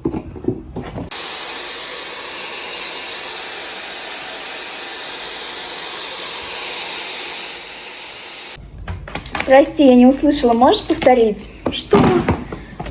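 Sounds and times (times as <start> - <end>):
hair dryer blowing air: 1.1 - 8.6.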